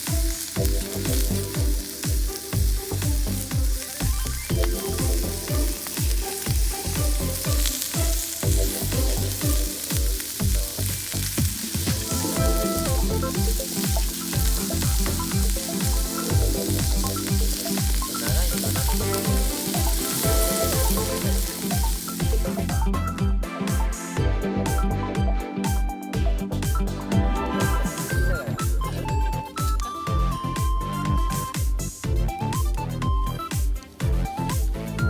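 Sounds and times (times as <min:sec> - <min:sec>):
food sizzling in a pan: 0:00.0 - 0:22.9
background music with deep beat: 0:00.0 - 0:35.0.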